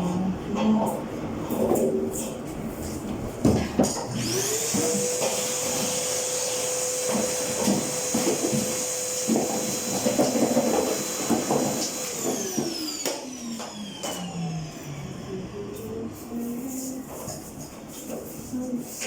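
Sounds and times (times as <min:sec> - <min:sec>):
electric motor fan running: 0:04.0 - 0:17.8.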